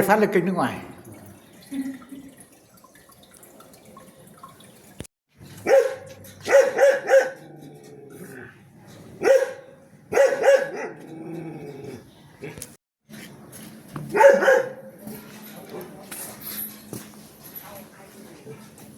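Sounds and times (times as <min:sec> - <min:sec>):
dog barking: 0:05.6 - 0:07.5, 0:09.2 - 0:11.1, 0:14.1 - 0:14.9.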